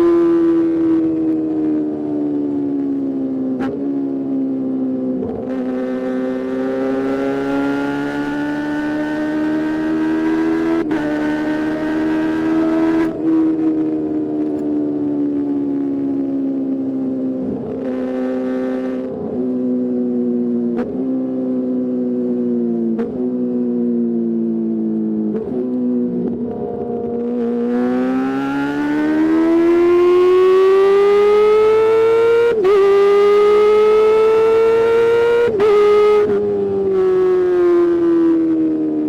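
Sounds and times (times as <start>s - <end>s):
motorcycle engine revving: 5.2s - 14.6s, 16.7s - 19.8s, 20.4s - 39.0s.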